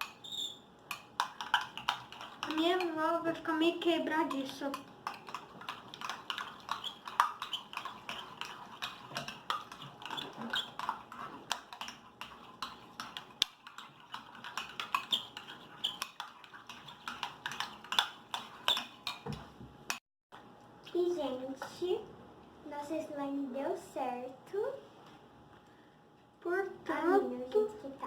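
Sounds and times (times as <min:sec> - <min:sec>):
utensils tapping bowls: 0:00.9 - 0:19.5
sticky slime scraping: 0:05.4 - 0:19.1.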